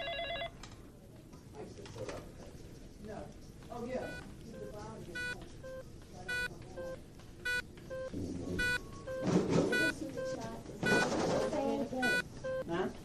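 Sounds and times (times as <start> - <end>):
patient monitor beeping: 0.0 - 0.5, 3.4 - 12.9
background noise: 0.0 - 13.0
soft low-pitched beeps: 3.4 - 12.7.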